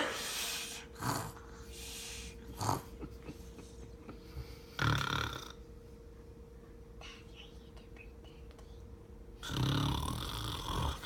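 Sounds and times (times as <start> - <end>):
pet snoring and snorting: 0.9 - 1.5, 2.5 - 3.0, 4.7 - 5.6, 9.4 - 11.0.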